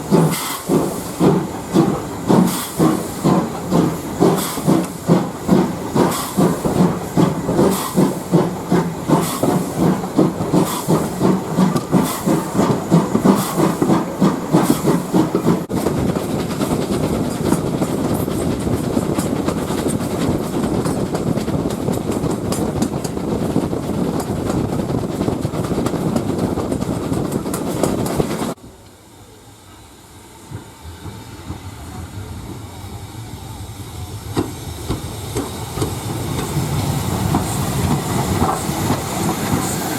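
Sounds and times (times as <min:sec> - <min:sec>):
steam hiss: 0:00.0 - 0:15.8, 0:29.0 - 0:39.9
steam locomotive chuffing: 0:00.0 - 0:39.9
train rumbling past: 0:00.0 - 0:39.9.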